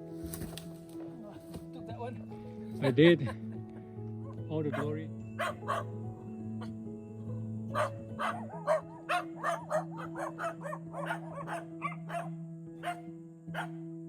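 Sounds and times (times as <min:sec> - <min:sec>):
background music chords: 0:00.0 - 0:14.0
repeated animal calls: 0:04.8 - 0:06.0, 0:07.7 - 0:13.8.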